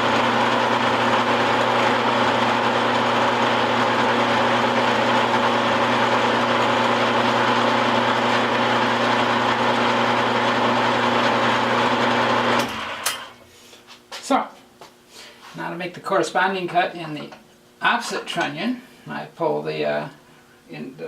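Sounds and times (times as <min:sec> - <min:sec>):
milling machine humming: 0:00.0 - 0:13.3.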